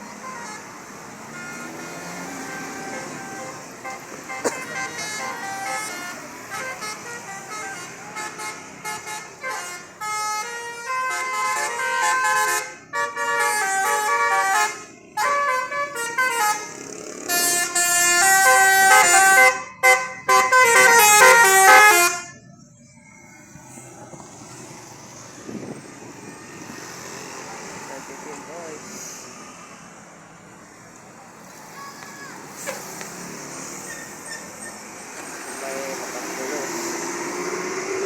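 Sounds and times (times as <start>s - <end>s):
multi-tone bus air horn: 0.0s - 22.4s.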